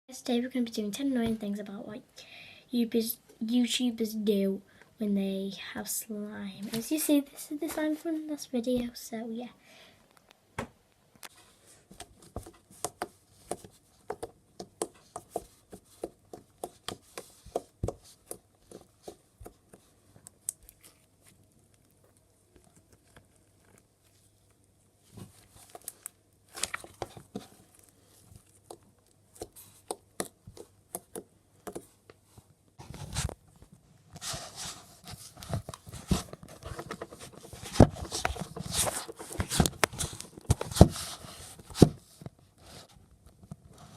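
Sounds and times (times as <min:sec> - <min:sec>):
slime squished by hand: 0:25.2 - 0:31.9.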